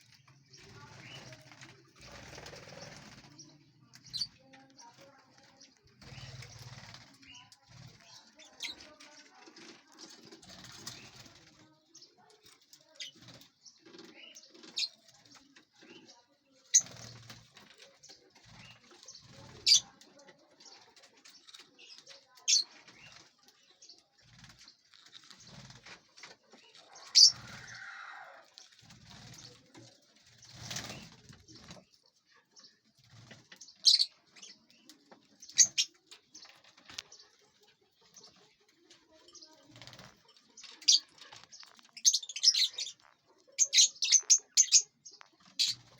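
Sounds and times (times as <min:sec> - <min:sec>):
lovebirds chirping: 0:00.0 - 0:45.9
wing flutters: 0:00.6 - 0:03.4, 0:24.2 - 0:31.8.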